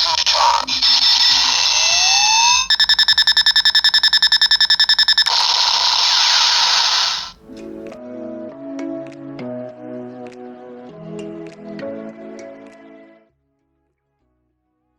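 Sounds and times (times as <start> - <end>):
rapid pulsing beeps: 0.0 - 7.4
rising electronic charging tone: 0.0 - 7.4.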